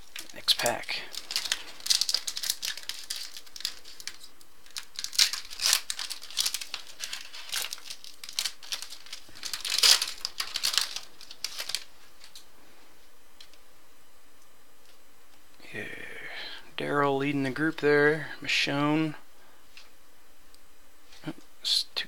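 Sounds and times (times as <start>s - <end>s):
wrapper tearing and crinkling: 0.0s - 12.5s.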